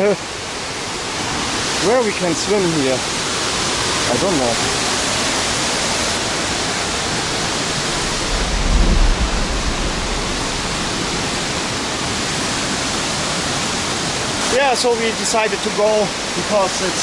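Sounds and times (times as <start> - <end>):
waterfall rushing: 3.1 - 12.7
low rumble on microphone: 7.3 - 11.8.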